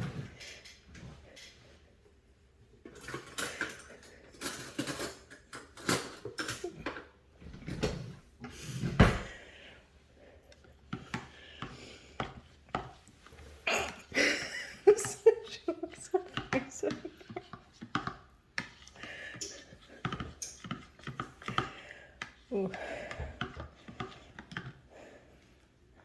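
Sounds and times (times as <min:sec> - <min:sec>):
utensils and containers clinking: 0:02.9 - 0:07.8, 0:13.0 - 0:24.7.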